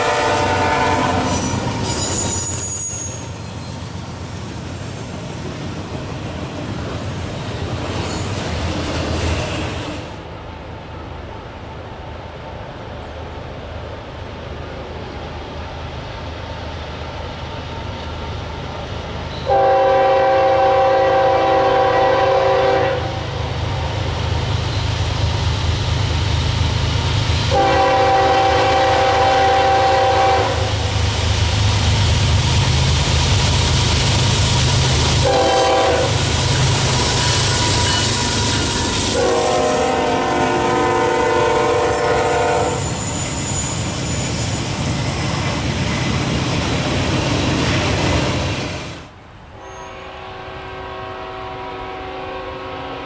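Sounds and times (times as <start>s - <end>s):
locomotive air horn blasts: 0.0s - 2.6s, 19.4s - 23.4s, 27.5s - 30.8s, 35.2s - 36.2s, 39.1s - 43.0s, 49.6s - 53.0s
train rumbling and clattering: 0.0s - 49.6s.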